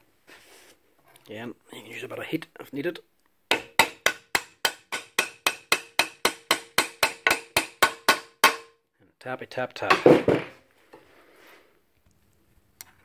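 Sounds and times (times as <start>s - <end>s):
hammer tapping metal: 3.5s - 8.7s.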